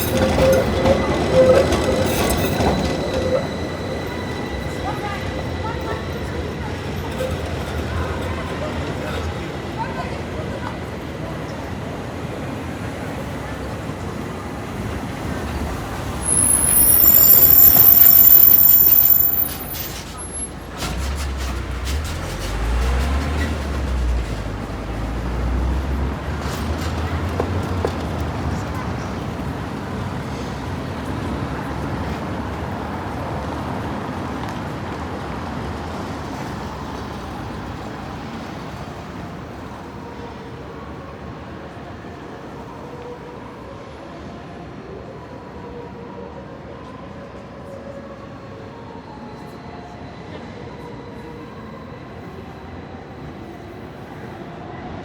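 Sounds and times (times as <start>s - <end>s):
high-pitched wheel squeal: 0.0s - 7.8s, 15.8s - 21.6s
tram rumbling on rails: 0.0s - 55.0s
traffic rumble: 13.4s - 40.0s.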